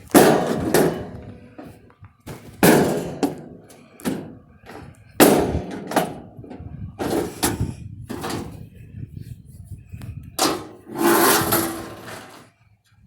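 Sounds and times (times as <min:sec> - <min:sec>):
sledgehammer striking metal: 0:00.1 - 0:01.7, 0:02.6 - 0:06.4.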